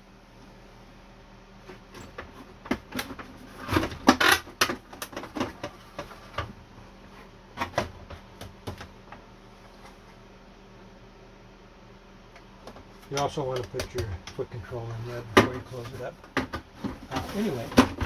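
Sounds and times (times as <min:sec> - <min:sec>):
plastic case knocks and clacks: 0:15.3 - 0:18.0.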